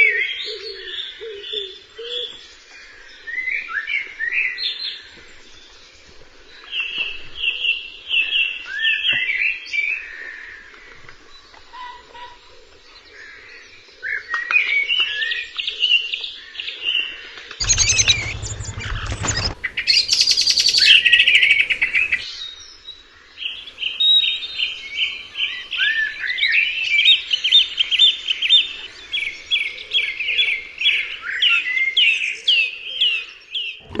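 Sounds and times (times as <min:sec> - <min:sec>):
burst of noise: 0:17.6 - 0:22.2
songbirds singing: 0:17.6 - 0:22.3, 0:23.5 - 0:33.8.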